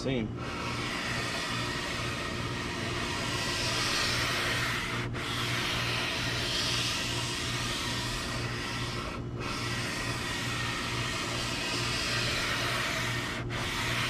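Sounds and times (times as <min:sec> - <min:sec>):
sandpaper rasping on wood: 0:00.0 - 0:14.0.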